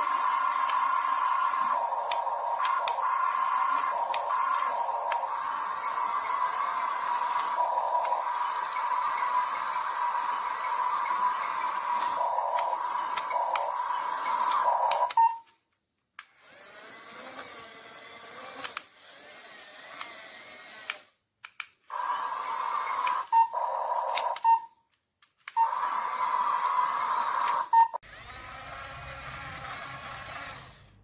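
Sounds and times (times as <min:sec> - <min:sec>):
toy gear motors whining: 0:00.0 - 0:15.6, 0:16.2 - 0:21.2, 0:21.9 - 0:31.0.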